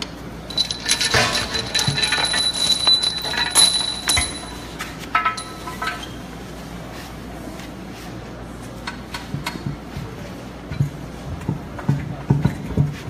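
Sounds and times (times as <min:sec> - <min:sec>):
metal tools clinking and rattling: 0:00.5 - 0:06.2.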